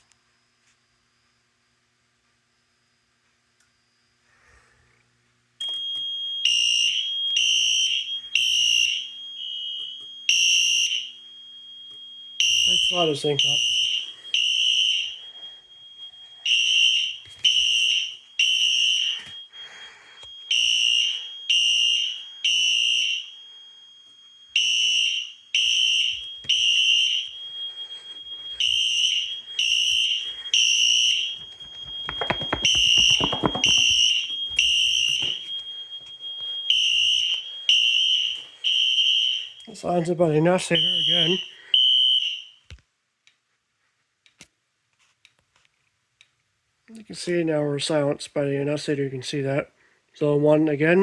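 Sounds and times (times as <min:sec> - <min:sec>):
faint steady high tone: 0:05.6 - 0:07.4, 0:11.0 - 0:22.4, 0:23.2 - 0:38.7, 0:39.4 - 0:41.7
fire alarm beeps: 0:05.6 - 0:42.8.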